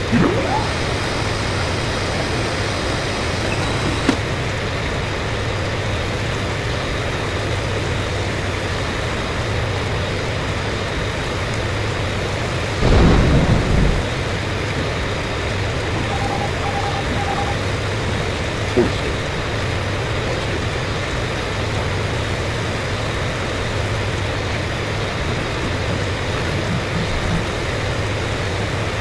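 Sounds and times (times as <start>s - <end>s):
low hum: 0.0s - 4.8s, 11.2s - 29.0s
aircraft roar: 0.0s - 29.0s
short beeps: 16.0s - 17.7s.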